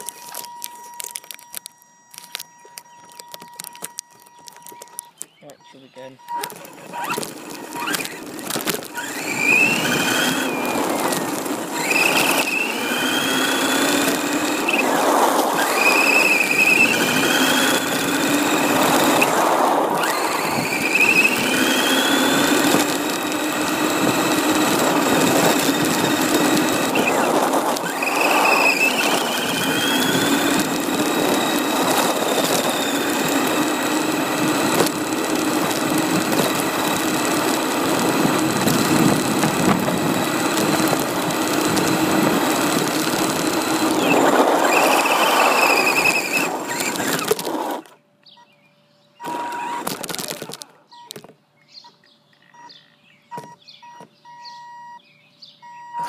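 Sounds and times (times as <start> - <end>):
toy car motor whining: 0.0 - 48.0, 49.2 - 51.3
rattling running noise: 6.2 - 48.0, 49.2 - 51.3.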